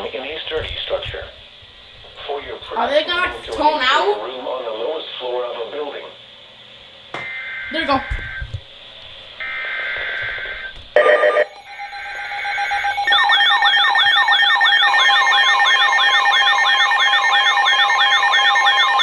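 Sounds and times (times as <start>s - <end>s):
screeching data bursts: 7.2s - 8.5s, 9.4s - 19.0s
warbling siren-like alarm: 7.2s - 8.6s, 9.2s - 19.0s.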